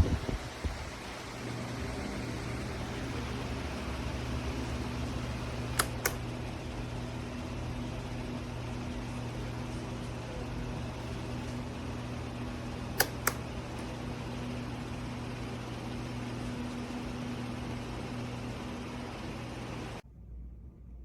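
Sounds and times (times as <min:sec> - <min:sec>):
fan running: 0:00.0 - 0:21.0
sharp clicks: 0:05.7 - 0:06.2, 0:13.0 - 0:13.9.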